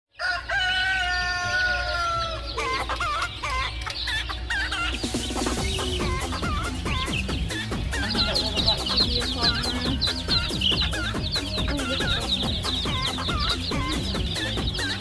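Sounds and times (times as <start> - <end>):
rooster crowing: 0.1 - 2.7
wavering bird calls: 0.1 - 15.0
electronic music with bass beat: 5.0 - 15.0.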